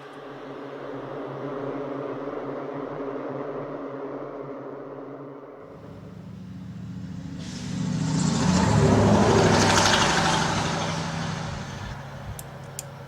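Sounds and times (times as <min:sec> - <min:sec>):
low engine hum: 0:05.7 - 0:13.0
motor vehicle driving past: 0:05.7 - 0:13.0.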